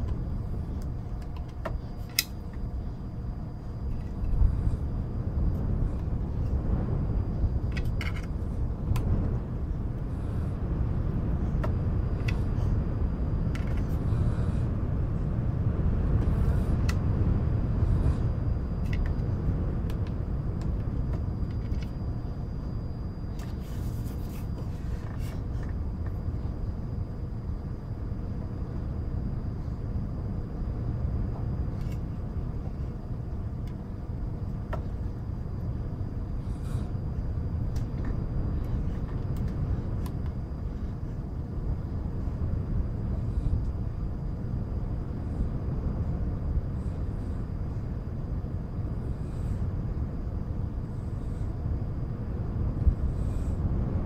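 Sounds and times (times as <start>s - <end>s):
low rumbling wind: 0.0s - 54.0s.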